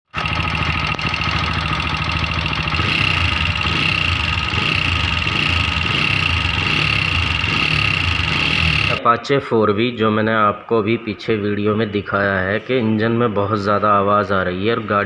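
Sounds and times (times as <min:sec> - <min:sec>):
motorcycle engine idling: 0:00.1 - 0:09.0
rapid tappet ticking: 0:00.2 - 0:09.0.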